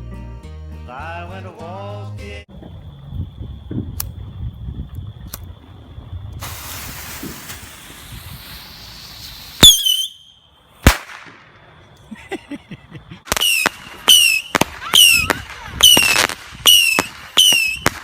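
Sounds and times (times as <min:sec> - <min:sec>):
firework hissing: 0:06.4 - 0:11.3, 0:13.2 - 0:18.0
firework bangs: 0:06.4 - 0:11.6, 0:13.2 - 0:18.0
sharp firework crack: 0:06.4 - 0:11.6, 0:13.2 - 0:18.0
short falling whistle: 0:09.2 - 0:10.4, 0:13.4 - 0:17.9.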